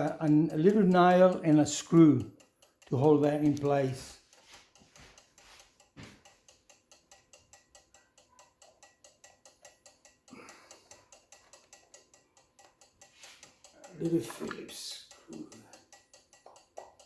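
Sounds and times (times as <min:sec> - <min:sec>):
clock ticking quickly: 0:00.0 - 0:17.0.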